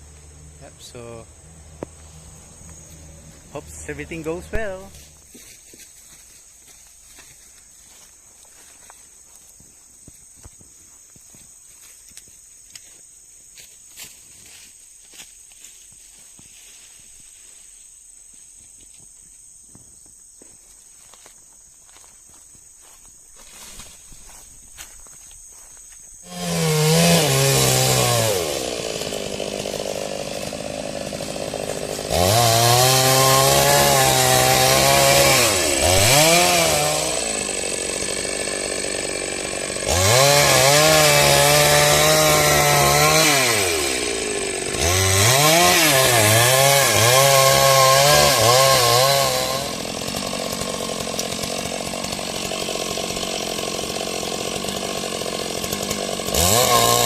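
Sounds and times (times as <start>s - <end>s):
chainsaw revving: 0.0s - 5.5s, 26.2s - 57.0s
chainsaw idling: 0.0s - 6.4s, 25.5s - 57.0s.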